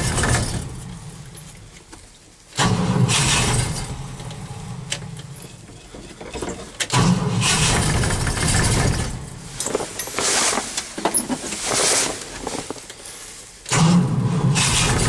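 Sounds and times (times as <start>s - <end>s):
car engine cranking: 0.0s - 1.8s, 2.5s - 10.2s, 13.6s - 15.0s.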